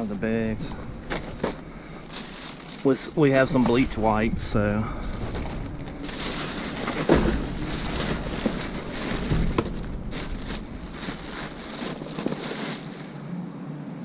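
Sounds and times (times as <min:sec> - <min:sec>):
plastic bags rustling: 0:00.0 - 0:13.3
dull thump: 0:05.1 - 0:12.6.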